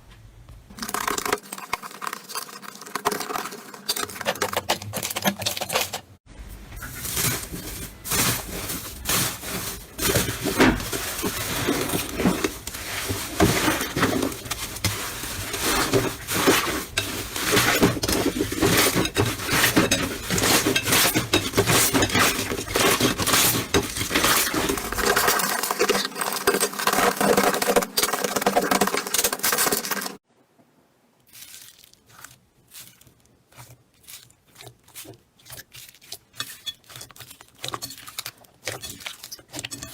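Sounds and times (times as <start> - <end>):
crunchy slime crackling: 31.2 - 39.9.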